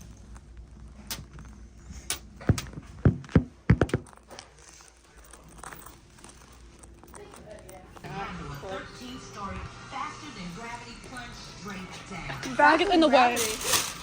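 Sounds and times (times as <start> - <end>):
objects knocking and thudding: 2.2 - 4.4.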